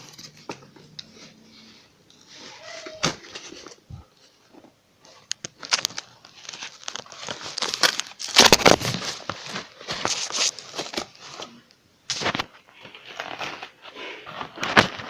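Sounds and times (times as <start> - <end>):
packaging rustling and ripping: 5.1 - 15.0.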